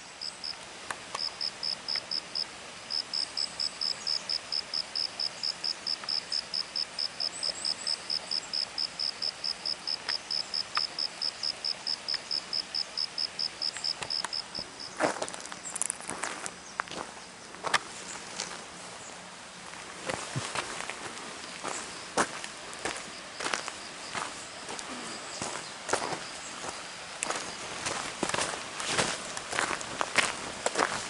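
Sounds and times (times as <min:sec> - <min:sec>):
insect chirping: 0:00.0 - 0:15.9, 0:21.4 - 0:28.5.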